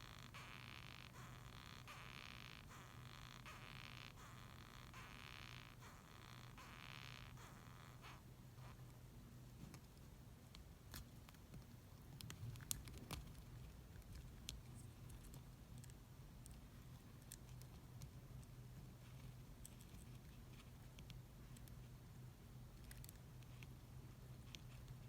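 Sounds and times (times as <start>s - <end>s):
beetle scratchy clicks: 0.0s - 8.8s.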